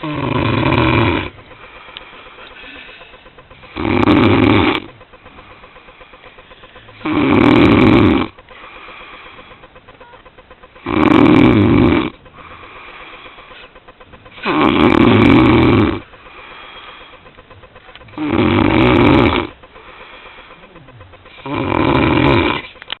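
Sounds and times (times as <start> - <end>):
person snoring heavily: 0.0 - 1.8, 2.6 - 4.9, 6.9 - 9.6, 10.8 - 13.7, 14.3 - 17.2, 18.1 - 22.8
soft breathing: 1.2 - 3.8, 8.3 - 9.8, 12.2 - 13.8, 16.0 - 17.6, 19.4 - 21.5.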